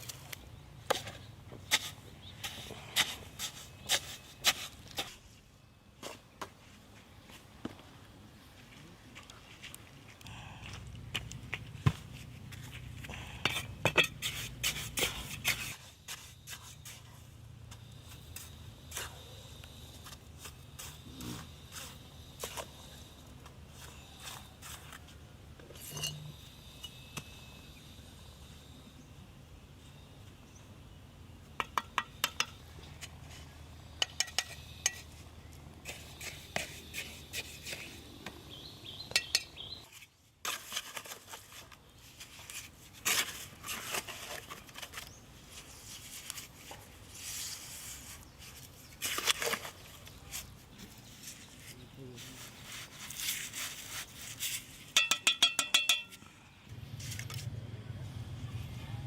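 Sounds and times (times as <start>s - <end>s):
hard objects clinking and knocking: 54.9s - 56.2s.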